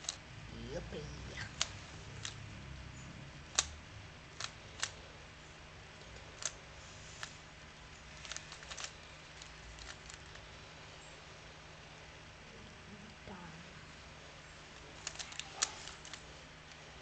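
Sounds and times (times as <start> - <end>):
puzzle cube layers clicking: 1.5 - 2.5, 4.4 - 5.0, 8.2 - 10.4, 14.9 - 16.2.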